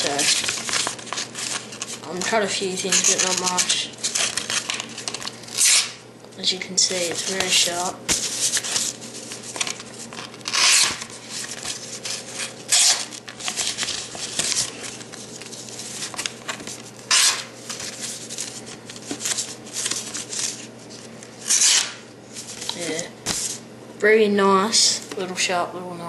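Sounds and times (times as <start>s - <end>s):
paper rustling and crackling: 0.0s - 5.9s, 6.9s - 23.6s
knife cutting paper: 0.0s - 6.0s, 7.0s - 20.7s, 21.4s - 22.0s.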